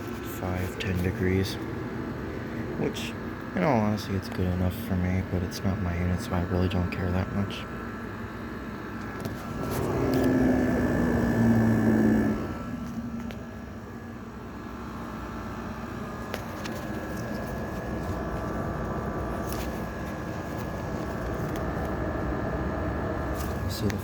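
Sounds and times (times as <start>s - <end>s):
air conditioner running: 0.0s - 24.0s
louder low hum: 0.0s - 24.0s.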